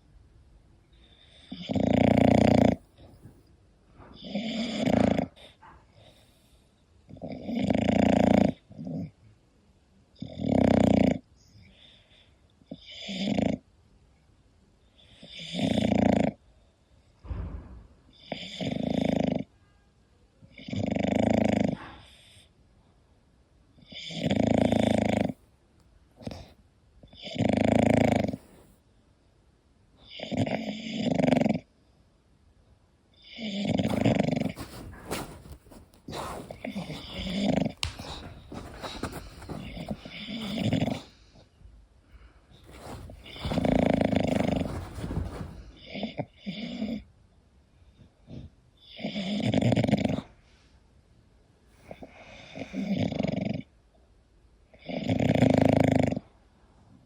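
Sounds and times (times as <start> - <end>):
dog snoring: 1.1 - 3.3, 4.1 - 5.6, 7.1 - 9.1, 10.2 - 11.3, 12.7 - 13.6, 15.0 - 16.4, 18.2 - 19.5, 20.5 - 22.3, 23.8 - 25.4, 26.2 - 28.7, 30.0 - 31.7, 33.2 - 41.4, 42.5 - 47.0, 48.3 - 50.3, 51.8 - 53.7, 54.7 - 56.3.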